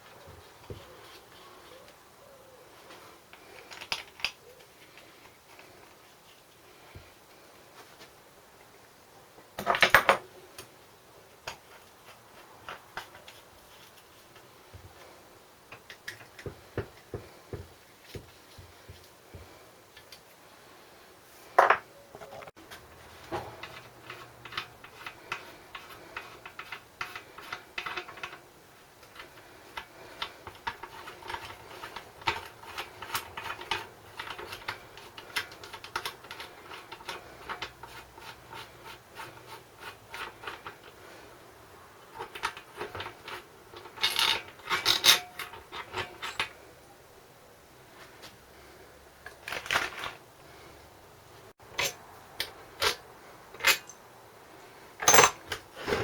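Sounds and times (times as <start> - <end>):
metal tools clinking and scraping: 42.1 - 46.7, 51.7 - 54.1, 55.0 - 56.0.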